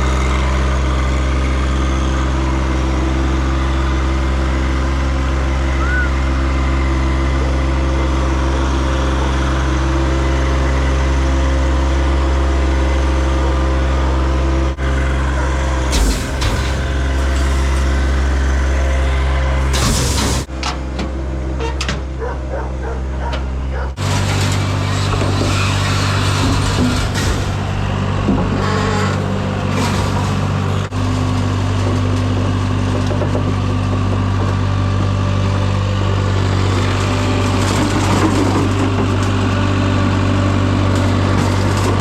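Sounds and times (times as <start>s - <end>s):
engine running steadily: 0.0s - 42.0s
clattering and knocks: 23.2s - 34.3s.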